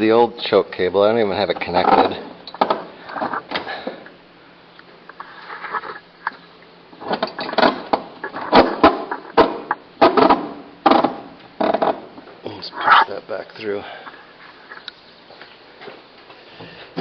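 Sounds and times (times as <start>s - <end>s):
sharp knocks and clunks: 7.1s - 12.0s.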